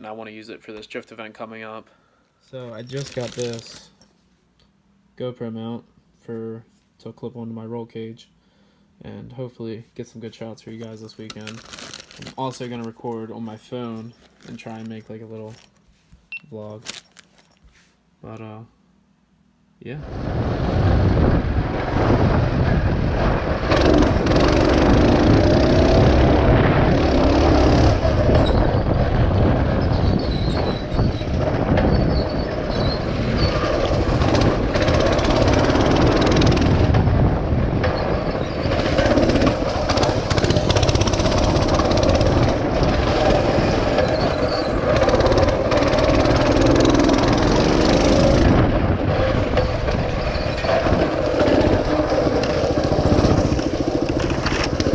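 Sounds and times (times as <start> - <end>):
mini bike engine revving: 23.4 - 28.4, 33.2 - 37.1, 38.0 - 54.9.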